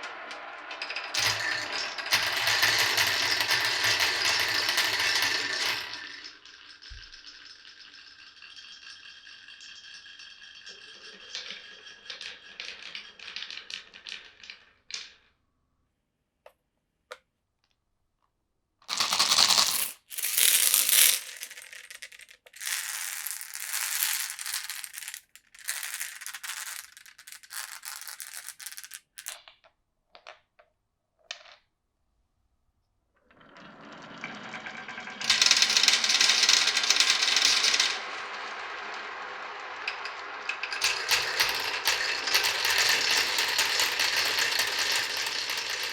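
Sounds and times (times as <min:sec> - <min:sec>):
marbles clattering down a marble run: 0:00.0 - 0:15.3, 0:18.9 - 0:29.6, 0:33.4 - 0:45.9.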